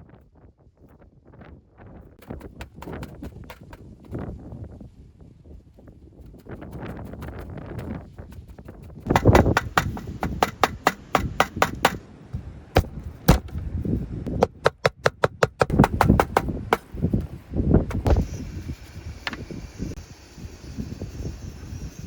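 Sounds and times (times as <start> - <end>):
sharp chopping knocks: 9.1 - 13.7, 14.3 - 17.0.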